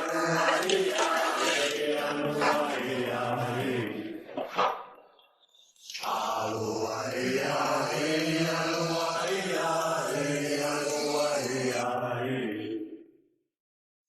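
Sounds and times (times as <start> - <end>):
song with chant-like vocals: 0.0 - 13.4.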